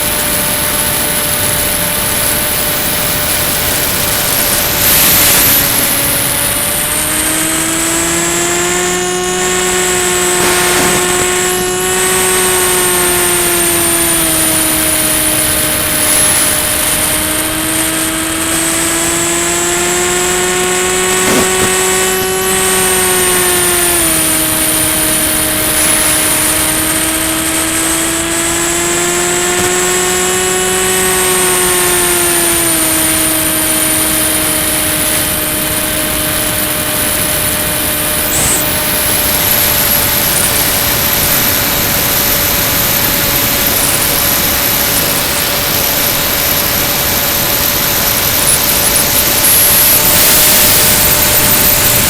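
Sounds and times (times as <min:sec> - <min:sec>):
electric propeller buzzing: 0:00.0 - 0:52.0
thin high whine: 0:00.0 - 0:52.0
rushing air: 0:10.2 - 0:11.7.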